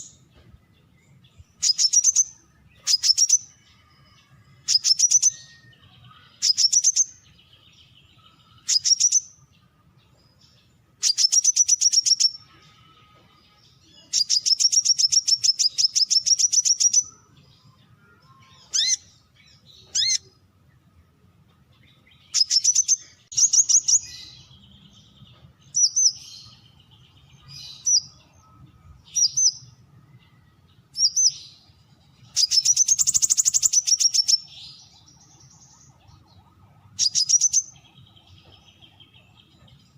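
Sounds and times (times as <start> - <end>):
sunbird calling in trills: 18.4 - 20.3, 32.3 - 35.4, 37.0 - 39.3.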